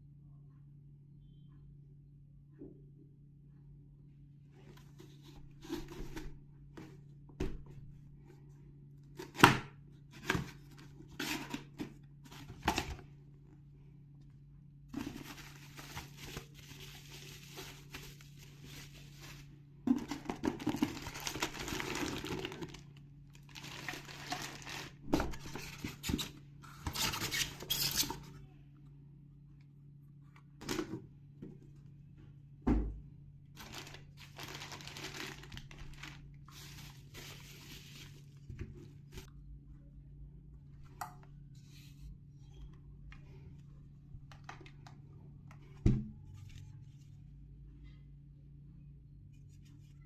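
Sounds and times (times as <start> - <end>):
cardboard and plastic tearing: 15.0 - 28.2, 33.6 - 38.1.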